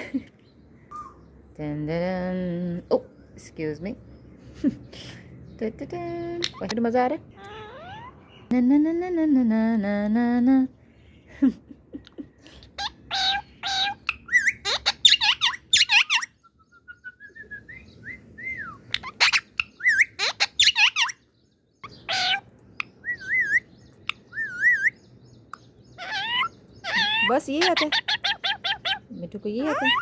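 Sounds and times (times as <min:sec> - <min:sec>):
parrot squawking and whistling: 0:00.9 - 0:01.2, 0:07.3 - 0:08.3, 0:12.8 - 0:21.2, 0:21.8 - 0:25.0, 0:26.0 - 0:30.0.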